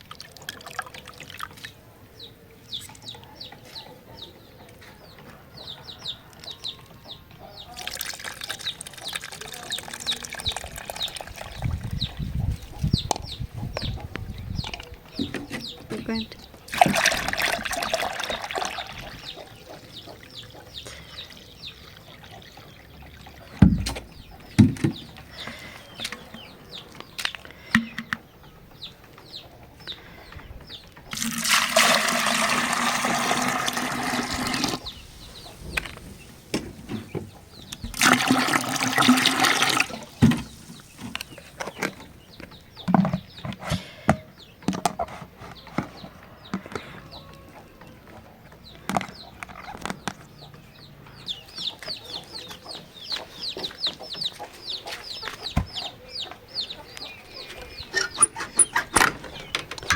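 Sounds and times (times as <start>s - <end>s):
water pouring: 0.0s - 1.8s, 7.8s - 11.6s, 16.7s - 19.1s, 31.1s - 34.8s, 37.8s - 41.2s.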